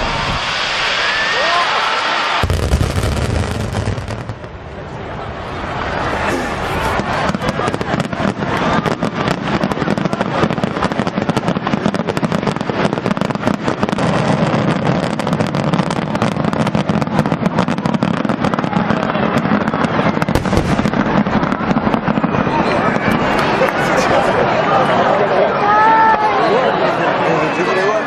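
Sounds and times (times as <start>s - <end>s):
fireworks crackling: 0.0s - 25.2s.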